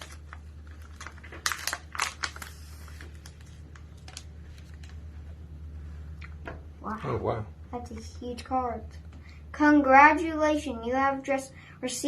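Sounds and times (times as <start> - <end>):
wrapper tearing and crinkling: 0.0 - 5.0.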